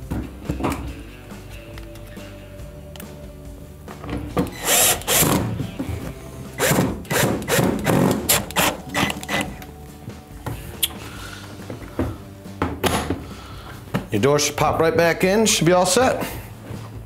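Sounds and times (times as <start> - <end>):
power drill driving screws: 4.5 - 5.4, 6.6 - 9.5.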